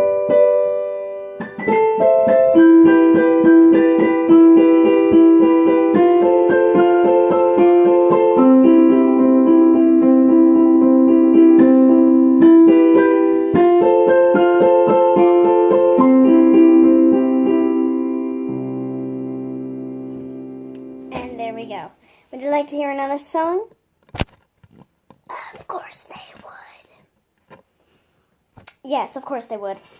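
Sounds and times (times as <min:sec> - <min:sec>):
piano playing: 0:00.0 - 0:21.8.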